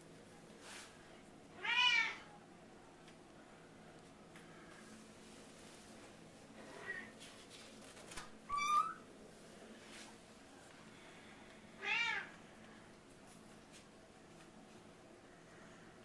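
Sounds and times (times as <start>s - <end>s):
cat meowing: 1.6s - 2.2s.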